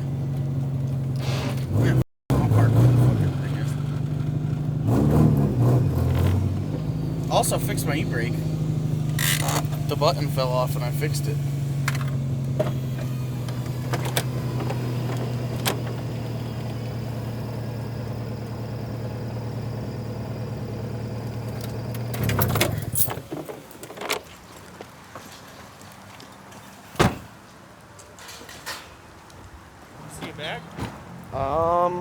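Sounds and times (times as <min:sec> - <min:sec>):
car engine idling: 0:00.0 - 0:23.1.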